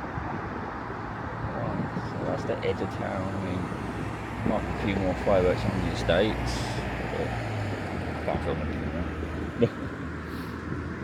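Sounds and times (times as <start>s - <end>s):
distant city traffic hum: 0.0s - 11.0s.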